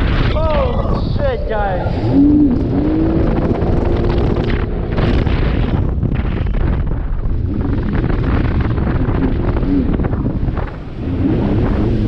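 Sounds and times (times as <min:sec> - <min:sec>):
wind blasting microphone: 0:00.0 - 0:12.0
jet ski engine at full throttle: 0:00.6 - 0:12.0.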